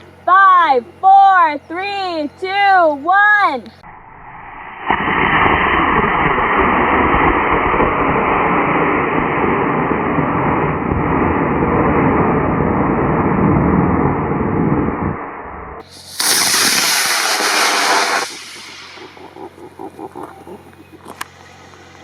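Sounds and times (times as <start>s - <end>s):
loud steady rushing: 3.8s - 21.0s
rocket motor igniting: 4.0s - 19.6s.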